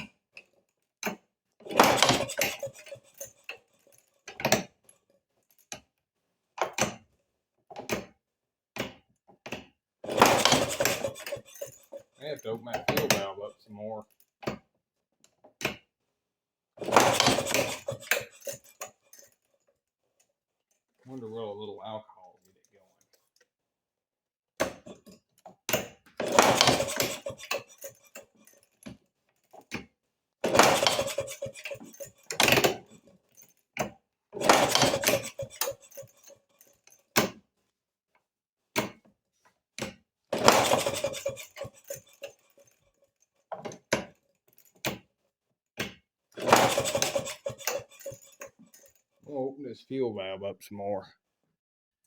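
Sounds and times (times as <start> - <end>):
engine cranking clatter: 1.7 - 4.6, 10.1 - 13.4, 16.8 - 19.4, 26.2 - 28.7, 30.4 - 33.5, 34.4 - 36.9, 40.4 - 42.8, 46.4 - 49.0.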